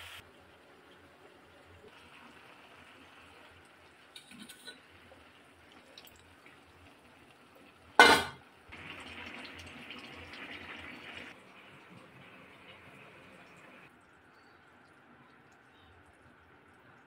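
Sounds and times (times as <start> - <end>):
liquid splashing in a pot: 2.0 - 7.0.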